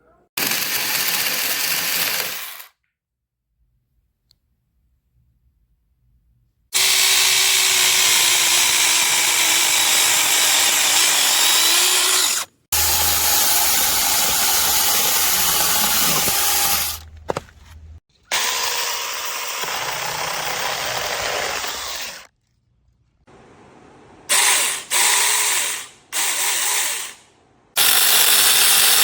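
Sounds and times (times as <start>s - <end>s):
mini chainsaw cutting wood: 0.4s - 2.8s, 6.8s - 17.4s, 18.3s - 22.3s, 27.8s - 29.0s.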